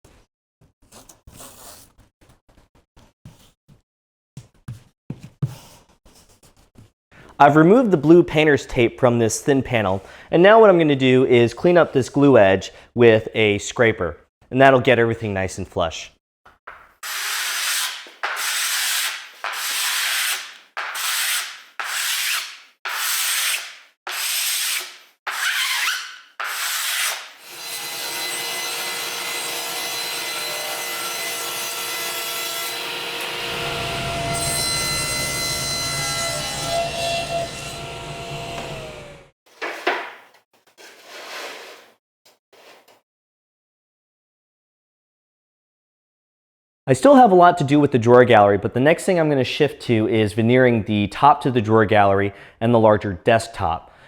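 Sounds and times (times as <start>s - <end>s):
hand scraper scraping wood: 17.0s - 27.6s, 33.5s - 40.1s
power tool running: 32.7s - 39.3s.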